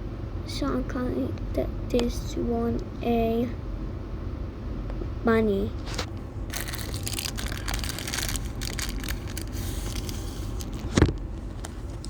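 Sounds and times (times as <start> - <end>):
plastic bag crinkling: 6.0 - 12.0.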